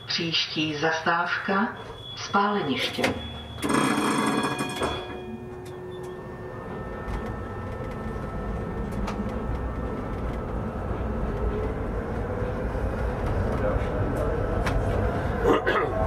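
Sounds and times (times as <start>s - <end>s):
tram wheels rumbling on rails: 3.0s - 16.0s
electric drive whine: 3.6s - 12.3s.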